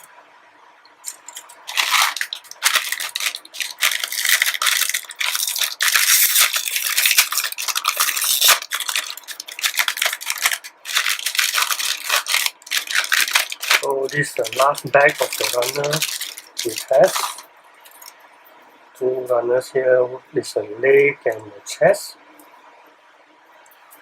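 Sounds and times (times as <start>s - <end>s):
plastic parts clicking and rattling: 1.0s - 18.1s
plastic bags crinkling: 1.0s - 18.2s.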